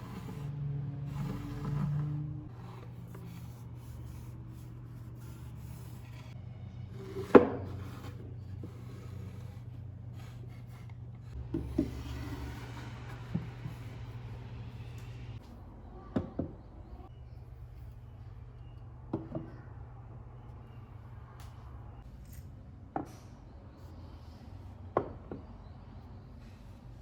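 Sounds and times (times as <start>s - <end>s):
items rubbing and scraping: 0.0s - 15.4s.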